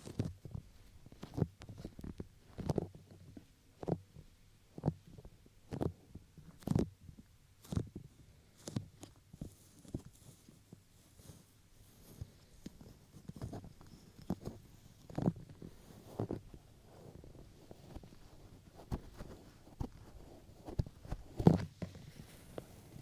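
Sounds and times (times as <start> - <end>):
hands patting microphone: 7.6 - 23.0.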